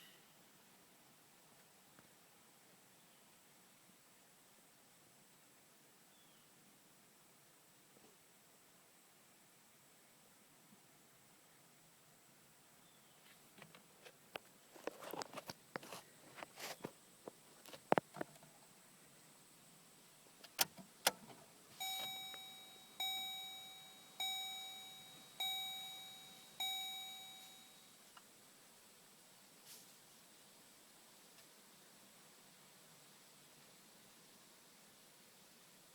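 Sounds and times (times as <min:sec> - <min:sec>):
vehicle warning chime dinging: 0:21.8 - 0:28.0.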